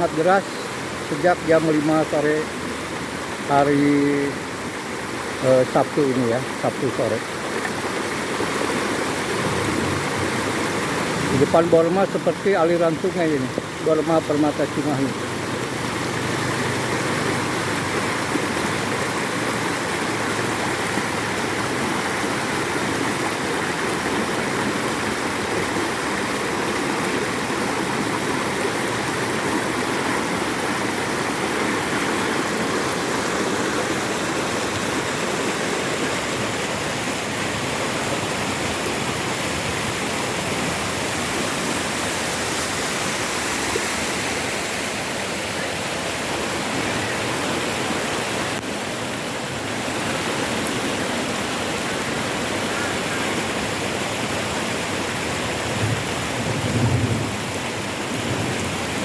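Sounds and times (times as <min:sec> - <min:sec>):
floodwater rushing: 0:00.0 - 0:59.0.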